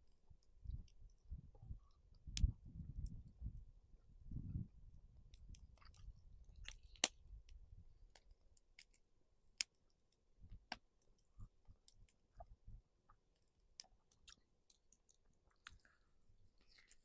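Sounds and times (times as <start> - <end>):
sharp clicks and pops: 5.3 - 7.6.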